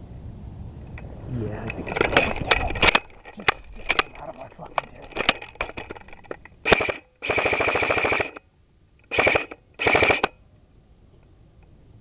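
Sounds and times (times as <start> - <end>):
airsoft gun firing bursts: 6.6 - 8.4, 9.1 - 10.3.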